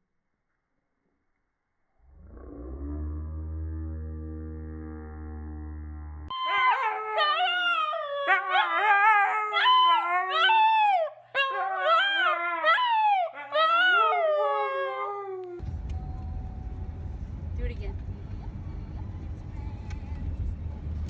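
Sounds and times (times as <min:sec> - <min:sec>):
dog howling: 0:02.4 - 0:15.6.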